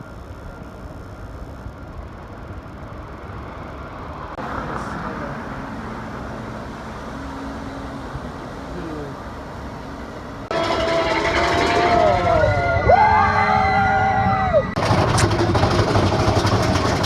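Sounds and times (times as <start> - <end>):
pitched gliding tones: 5.5 - 14.8.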